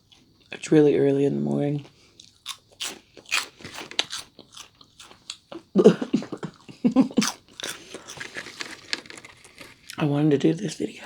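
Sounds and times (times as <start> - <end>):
person chewing crunchy snack: 1.8 - 10.0.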